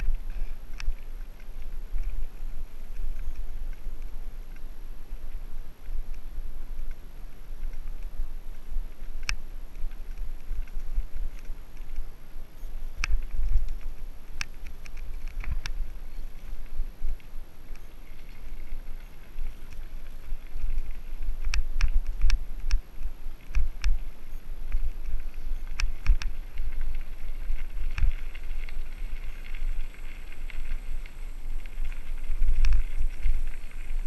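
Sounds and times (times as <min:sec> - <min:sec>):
wind rumble on microphone: 0:00.0 - 0:34.0
bike rattling over rocks: 0:12.8 - 0:34.0.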